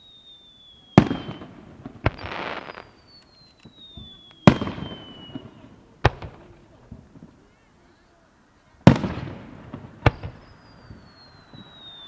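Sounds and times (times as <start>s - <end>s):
falling whistle: 0.0s - 1.5s, 2.1s - 5.5s, 10.4s - 12.0s
crackling hiss: 0.0s - 7.5s
fireworks bursting: 0.0s - 7.5s, 8.8s - 12.0s.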